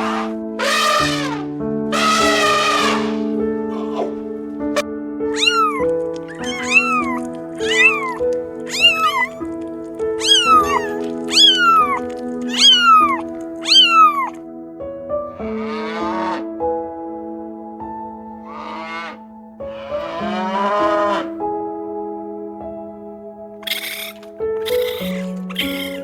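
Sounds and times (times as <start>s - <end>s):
cat meowing: 0.0s - 4.2s, 5.3s - 9.5s, 10.2s - 14.4s, 18.5s - 21.3s, 23.6s - 26.0s
rough animal call: 0.0s - 4.3s, 5.3s - 14.4s, 15.3s - 16.5s, 18.4s - 21.4s, 23.6s - 26.0s
background music: 0.0s - 26.0s.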